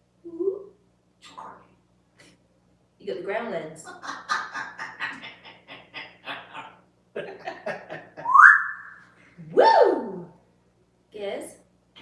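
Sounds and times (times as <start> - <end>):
parrot whistling: 8.2 - 9.1.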